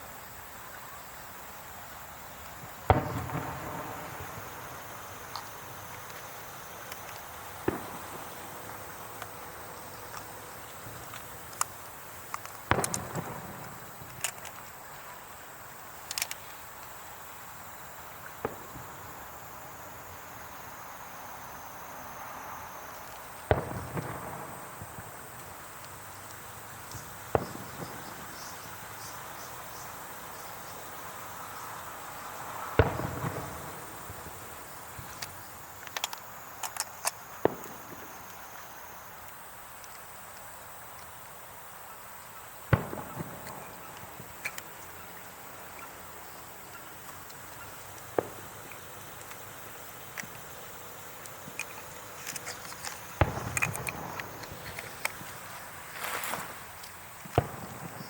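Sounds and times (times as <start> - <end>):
high insect trill: 0.0 - 58.0
fireworks bangs: 2.6 - 14.8, 18.3 - 19.6, 23.2 - 29.8, 32.2 - 36.2, 37.2 - 38.4, 42.4 - 58.0.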